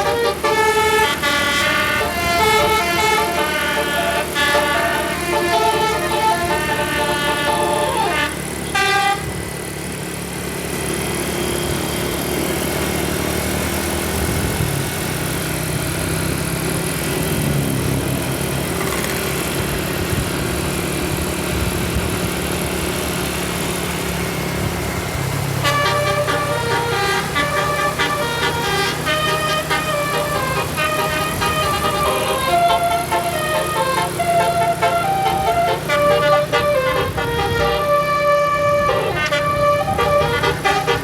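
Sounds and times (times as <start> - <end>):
multi-tone bus horn melody: 0.0 - 10.1, 17.0 - 41.0
bus engine running: 0.0 - 41.0
road noise: 0.0 - 41.0.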